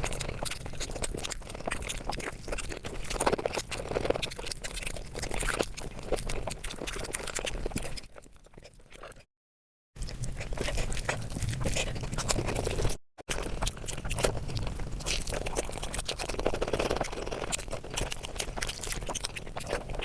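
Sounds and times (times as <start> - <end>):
sped-up chewing and lip-smacking: 0.0 - 9.3, 10.0 - 20.0.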